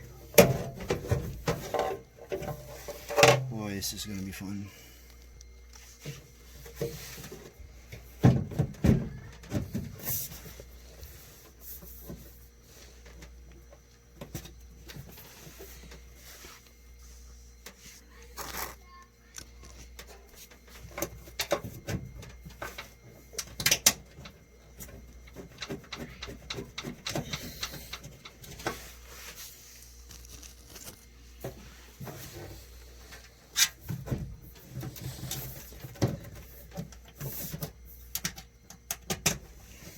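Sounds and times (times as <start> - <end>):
parts and tools clattering: 0.3 - 3.5.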